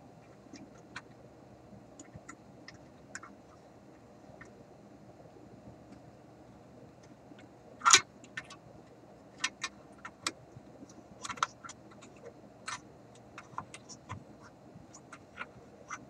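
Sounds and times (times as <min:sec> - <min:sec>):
radio parts clicking and tapping: 0:07.0 - 0:16.0.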